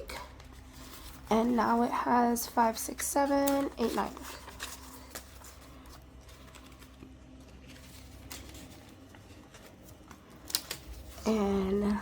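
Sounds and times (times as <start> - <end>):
low room hum: 0.0 - 12.0
paper rustling: 0.2 - 12.0.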